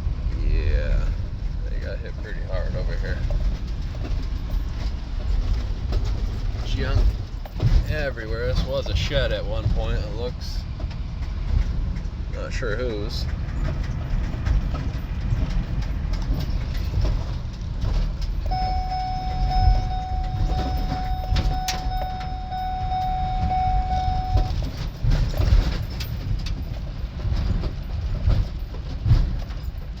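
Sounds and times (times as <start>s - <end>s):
vehicle rumble: 0.0s - 30.0s
steady high tone: 18.5s - 24.6s.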